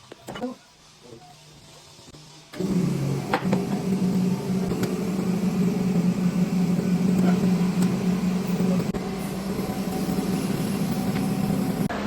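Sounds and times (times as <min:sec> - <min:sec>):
machine humming: 0:02.5 - 0:12.0.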